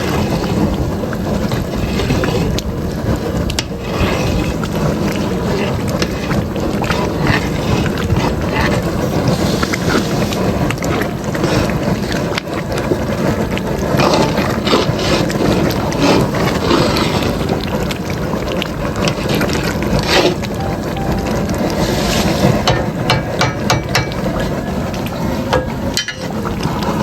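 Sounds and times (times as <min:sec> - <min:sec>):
spoon scraping cooking pot: 0:03.5 - 0:12.3, 0:13.9 - 0:17.9.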